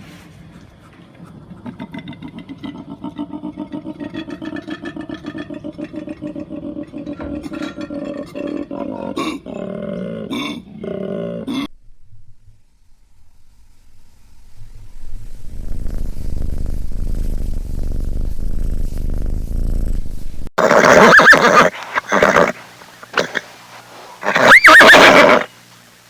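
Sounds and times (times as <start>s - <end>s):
loud animal calls: 20.6s - 25.5s.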